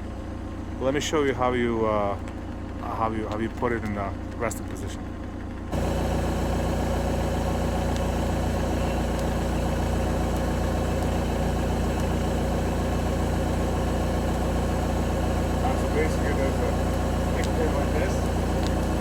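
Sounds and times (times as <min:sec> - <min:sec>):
excavator diesel engine idling: 0:05.1 - 0:19.0.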